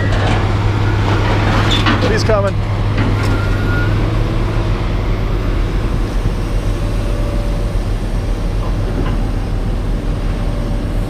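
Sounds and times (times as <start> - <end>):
engine running steadily: 0.0 - 11.0.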